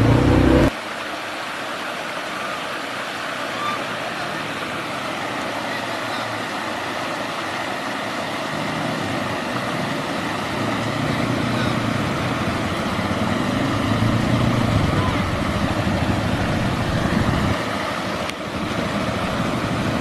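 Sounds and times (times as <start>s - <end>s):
atv engine running: 0.0s - 0.7s, 8.3s - 20.0s
steady wash of noise: 0.0s - 20.0s.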